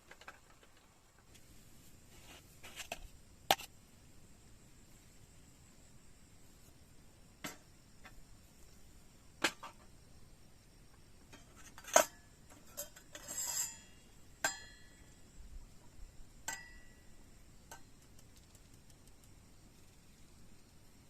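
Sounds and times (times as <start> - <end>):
metal scrape: 11.4 - 14.0
metal cookware clinking: 11.4 - 14.8, 16.5 - 16.9.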